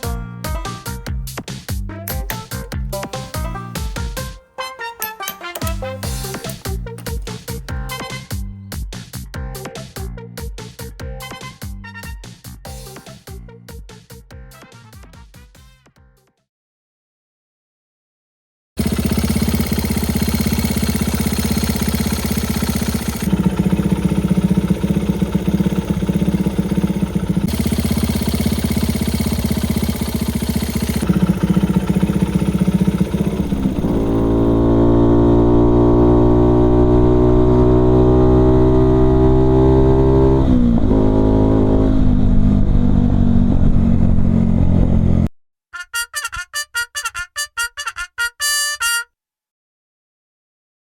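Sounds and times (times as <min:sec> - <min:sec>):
small engine running and revving: 0:18.8 - 0:45.3.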